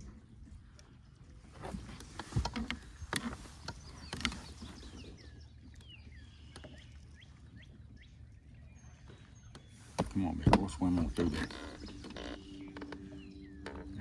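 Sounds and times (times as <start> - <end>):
knocks in a boat: 9.5 - 14.0.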